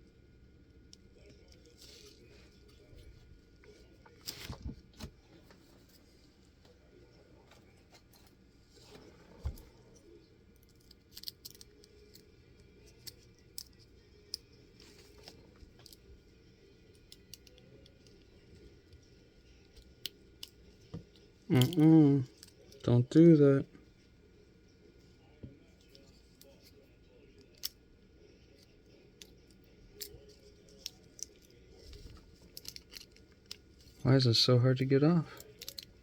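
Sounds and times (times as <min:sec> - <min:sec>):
small tools clicking and tapping: 0:35.3 - 0:36.0.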